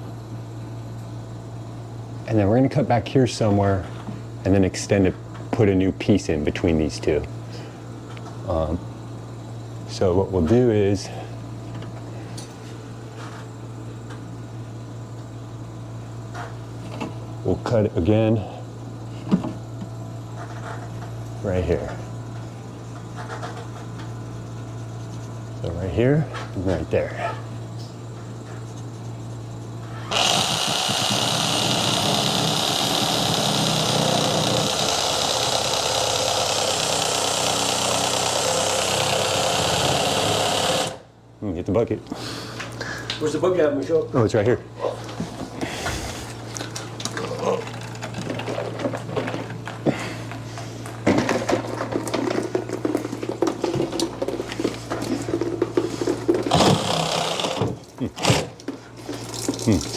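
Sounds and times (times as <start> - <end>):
steady low hum: 0.0 - 59.9
power saw cutting pipe: 29.9 - 41.0, 56.3 - 58.5.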